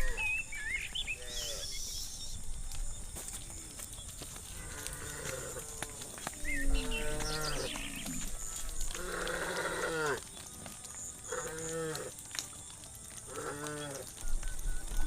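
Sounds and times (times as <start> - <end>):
cows mooing: 4.5 - 10.2, 11.2 - 12.2, 13.3 - 14.2.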